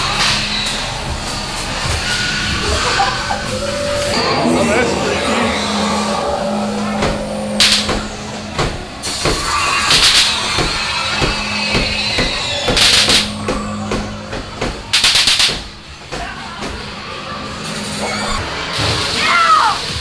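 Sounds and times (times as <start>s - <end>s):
steady low hum: 0.0s - 18.7s
pounding industrial music: 0.0s - 20.0s
loud bursts of hiss: 5.9s - 20.0s.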